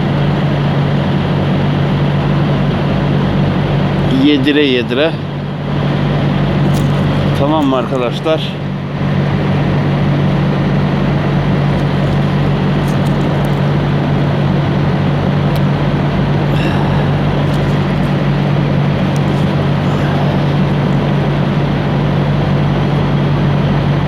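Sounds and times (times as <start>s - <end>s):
diesel engine idling: 11.2s - 24.0s.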